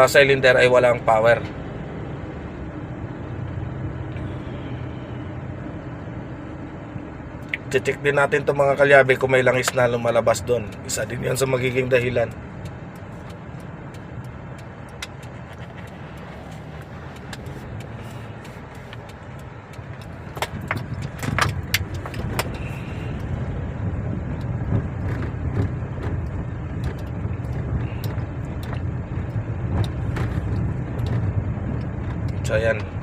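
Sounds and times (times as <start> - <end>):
car engine misfiring: 9.6 - 23.4.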